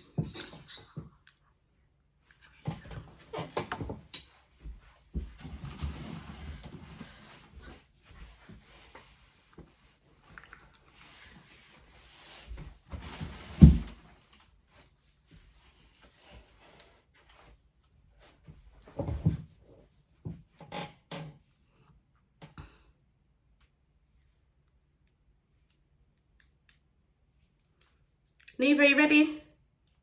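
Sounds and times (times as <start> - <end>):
rustling: 4.4 - 17.5.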